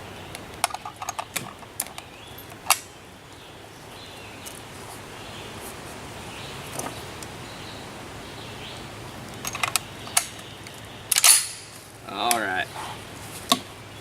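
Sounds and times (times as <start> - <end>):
rifle handling clicks and rattles: 0.4 - 2.9, 9.4 - 12.5.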